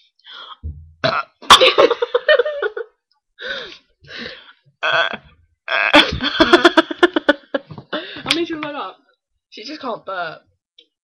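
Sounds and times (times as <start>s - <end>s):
woman gasping and straining: 3.4s - 4.6s.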